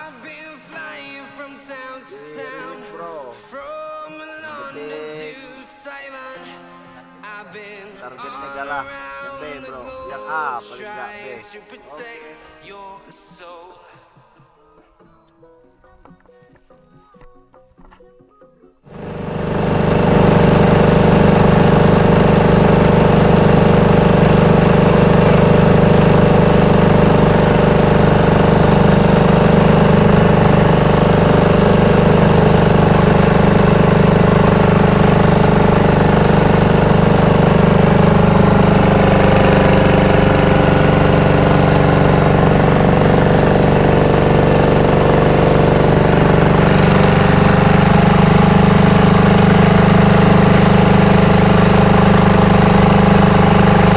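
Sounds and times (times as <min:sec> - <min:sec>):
engine running with even hum: 0:18.9 - 0:53.9.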